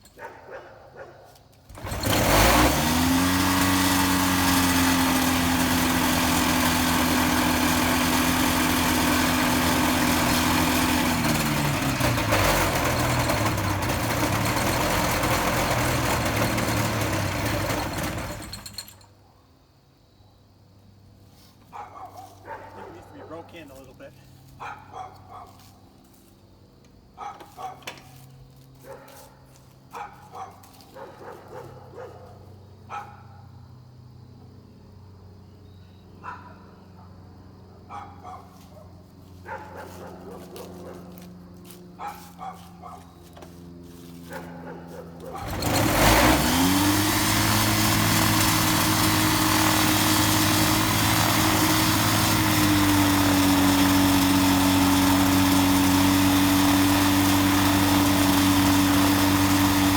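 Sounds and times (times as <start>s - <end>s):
two-stroke engine running: 1.7s - 19.0s, 40.6s - 59.9s.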